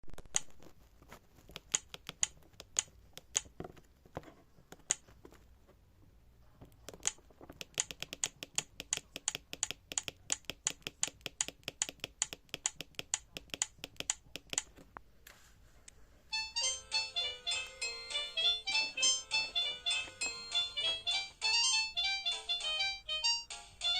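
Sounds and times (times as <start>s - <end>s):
phone keypad buttons clicking: 1.5s - 3.5s, 6.8s - 14.7s.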